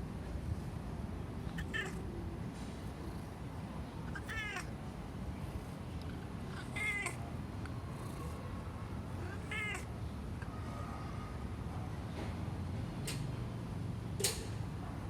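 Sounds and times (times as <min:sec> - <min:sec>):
cat meowing: 0:01.5 - 0:02.1, 0:04.0 - 0:04.7, 0:06.5 - 0:07.3, 0:09.2 - 0:09.9.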